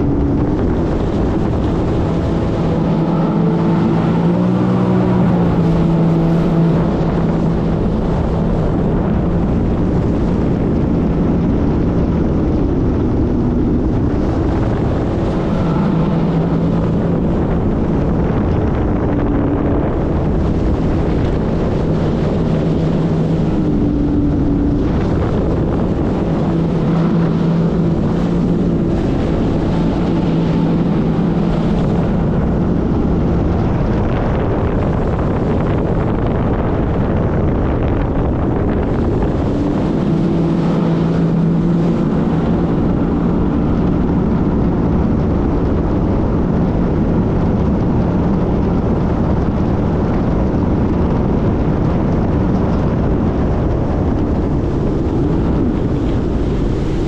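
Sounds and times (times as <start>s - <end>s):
jet ski engine revving: 0.0s - 57.0s
wind rushing over microphone: 0.0s - 57.0s.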